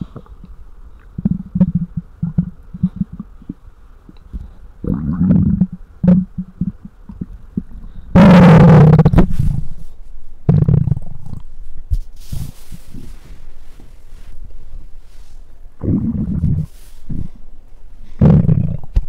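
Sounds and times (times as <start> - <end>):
stomach growling: 0.0 - 9.8, 10.5 - 11.9, 15.8 - 17.4, 18.2 - 19.0.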